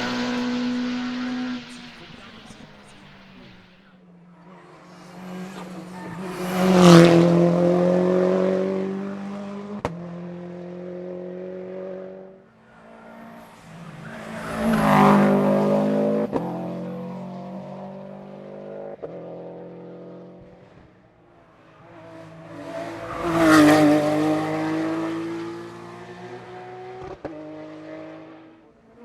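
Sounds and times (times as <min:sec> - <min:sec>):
race cars passing at full throttle: 0:00.0 - 0:29.0.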